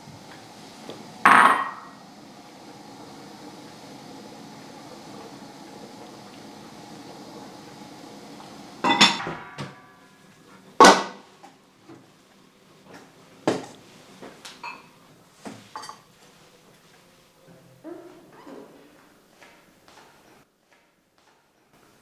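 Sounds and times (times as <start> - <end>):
steady hum: 0.0 - 10.8
kitchenware knocking and clinking: 1.3 - 2.0, 8.8 - 9.9, 15.8 - 16.1.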